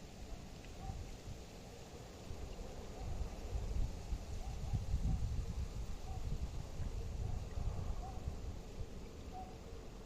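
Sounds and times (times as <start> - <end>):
wind buffeting microphone: 2.9 - 9.1.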